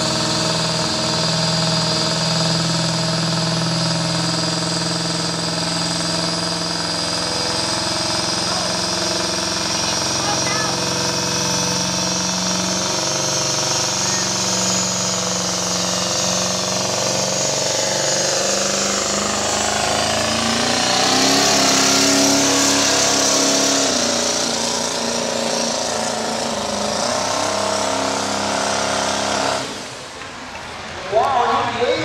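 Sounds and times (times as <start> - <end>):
truck engine revving under load: 0.0 - 31.9.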